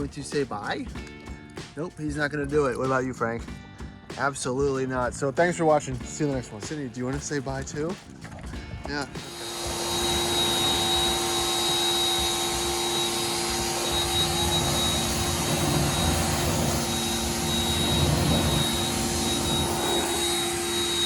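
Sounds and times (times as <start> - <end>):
machine whir with high whine: 9.2 - 21.0.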